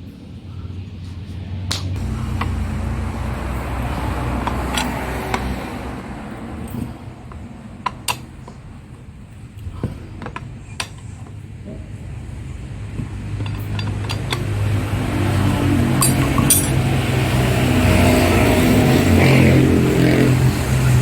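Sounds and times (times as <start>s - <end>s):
metal tools clinking: 4.4s - 5.0s, 13.3s - 14.8s, 16.0s - 16.9s.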